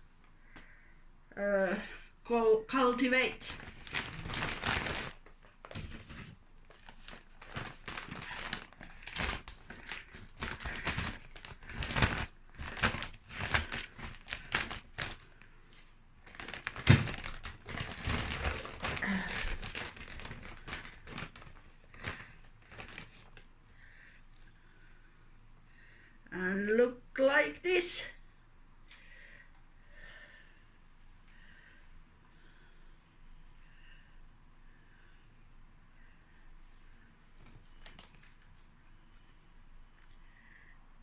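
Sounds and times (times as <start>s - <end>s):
plastic bag crinkling: 2.7s - 23.5s, 37.4s - 38.6s.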